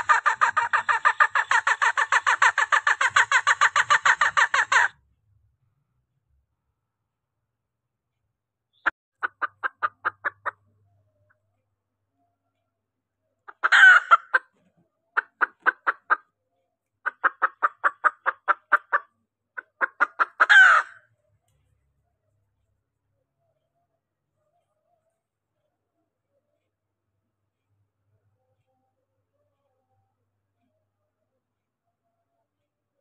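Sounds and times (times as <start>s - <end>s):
hen clucking: 0.0s - 4.9s, 9.2s - 10.6s, 13.5s - 14.6s, 15.2s - 16.3s, 17.1s - 21.0s
harsh hen calls: 0.0s - 5.0s, 9.2s - 10.7s, 13.5s - 14.5s, 15.2s - 16.2s, 17.1s - 21.0s.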